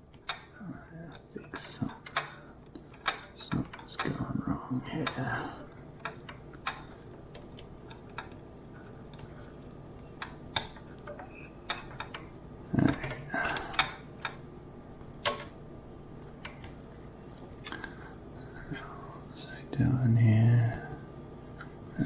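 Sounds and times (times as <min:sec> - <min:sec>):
light clicks and taps of tools: 0:00.1 - 0:04.2.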